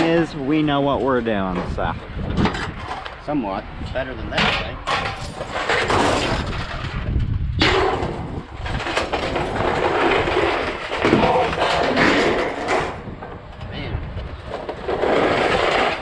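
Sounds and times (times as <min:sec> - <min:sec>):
scrap metal clanging onto a pile: 0:04.4 - 0:07.0, 0:07.6 - 0:13.0.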